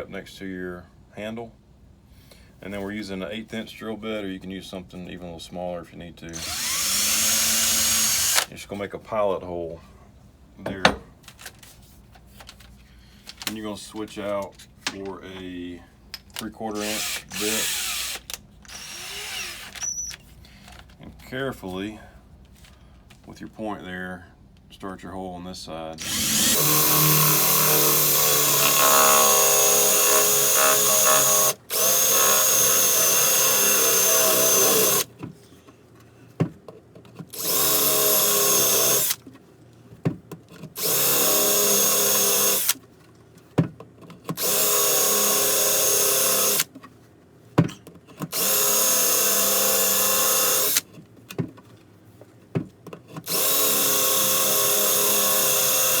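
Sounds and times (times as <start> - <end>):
power drill boring through wood: 6.4 - 8.5, 16.8 - 20.2, 26.0 - 35.1, 37.4 - 39.2, 40.8 - 42.8, 44.4 - 46.7, 48.3 - 50.8, 53.3 - 56.0.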